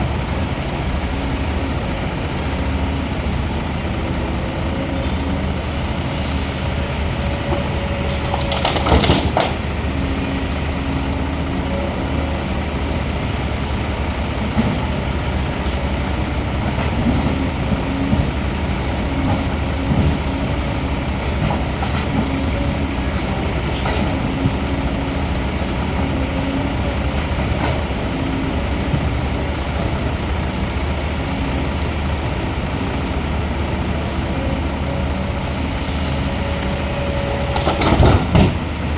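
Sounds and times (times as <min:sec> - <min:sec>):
heavy diesel machinery running: 0:00.0 - 0:38.9
loud clatter: 0:08.1 - 0:09.6.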